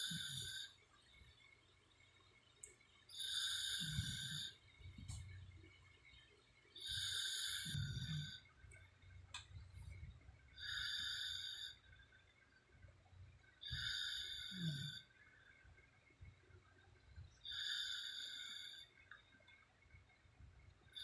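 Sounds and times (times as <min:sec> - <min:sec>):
woman snoring: 0:00.0 - 0:00.7, 0:03.2 - 0:04.6, 0:06.8 - 0:08.4, 0:10.6 - 0:11.8, 0:13.7 - 0:15.0, 0:17.5 - 0:18.9.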